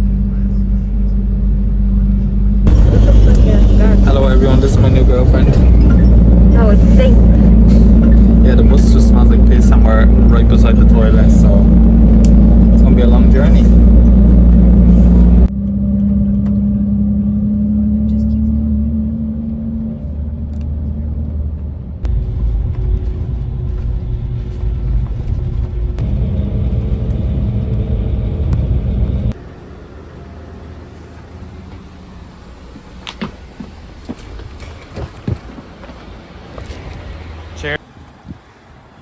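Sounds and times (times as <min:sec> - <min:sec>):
bus engine and road rumble: 0:00.0 - 0:39.0.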